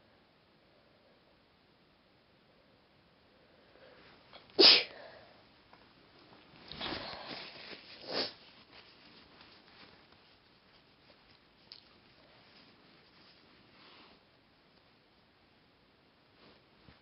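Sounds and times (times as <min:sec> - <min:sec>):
woman sneezing: 0:04.6 - 0:05.1.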